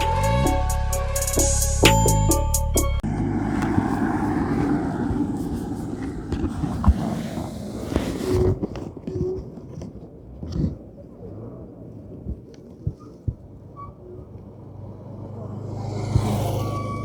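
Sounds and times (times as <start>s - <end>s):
intro music: 0.0s - 3.1s
motorcycle engine: 3.0s - 6.0s, 15.2s - 17.0s
wind noise: 3.0s - 10.8s.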